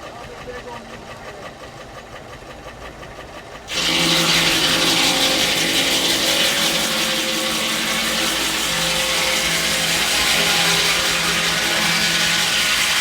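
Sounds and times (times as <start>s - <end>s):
circular saw cutting log: 3.7s - 13.0s.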